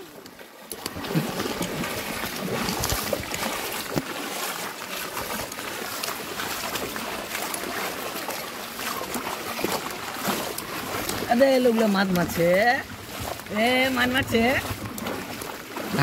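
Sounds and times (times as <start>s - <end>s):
floodwater sloshing and splashing: 0.0s - 16.0s.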